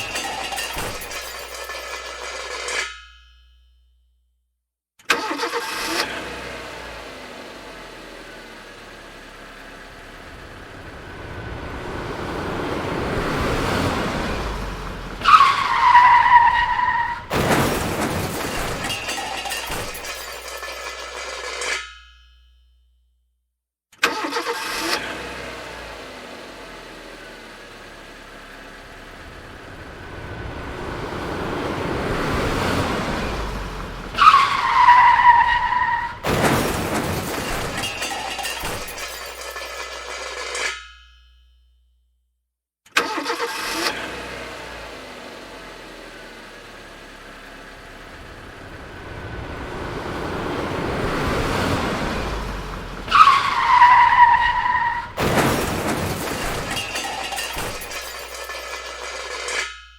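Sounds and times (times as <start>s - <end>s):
tyres screeching: 0.0s - 3.0s, 12.3s - 21.9s, 31.4s - 40.8s, 48.9s - 59.9s
car crash impact: 0.0s - 3.6s, 7.6s - 22.4s, 27.7s - 41.4s, 45.8s - 59.9s
debris rattling and tinkling: 0.0s - 3.7s, 9.9s - 22.6s, 32.1s - 41.5s, 47.8s - 59.9s
car engine approaching: 5.7s - 20.0s, 25.0s - 40.5s, 43.9s - 59.5s.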